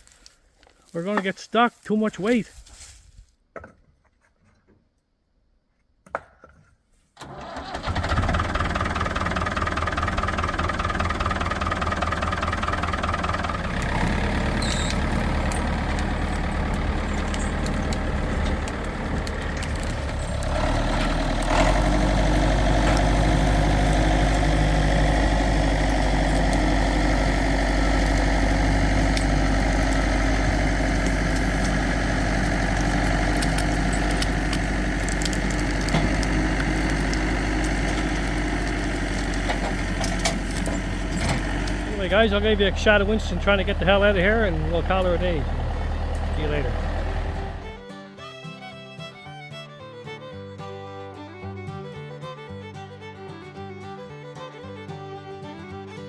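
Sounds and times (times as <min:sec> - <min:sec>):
tractor diesel engine running: 0:00.9 - 0:02.5, 0:07.2 - 0:47.9.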